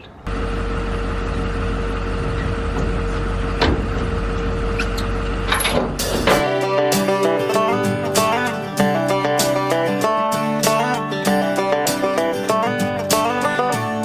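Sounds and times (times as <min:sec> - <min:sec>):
motor vehicle running: 0:00.0 - 0:14.0
guitar and banjo music: 0:06.0 - 0:14.0.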